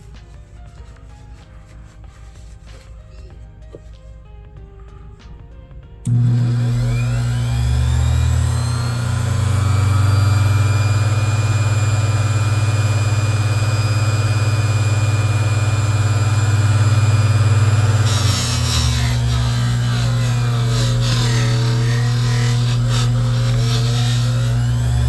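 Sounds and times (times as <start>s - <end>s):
bench grinder humming: 6.0s - 25.0s.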